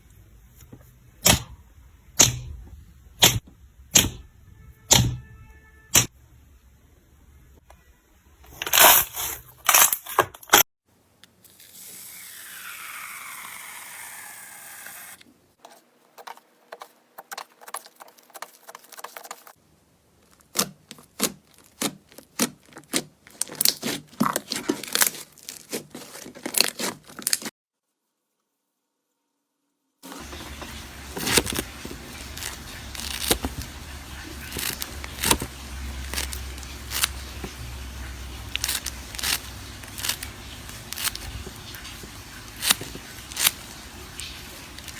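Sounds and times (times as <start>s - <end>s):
slime crackling and popping: 31.1s - 44.9s.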